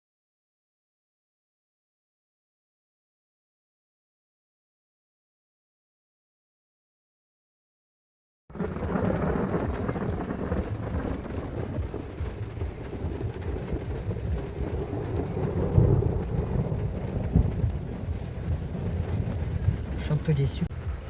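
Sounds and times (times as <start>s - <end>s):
steady rain: 8.5s - 21.0s
thunder rumbling: 8.5s - 21.0s.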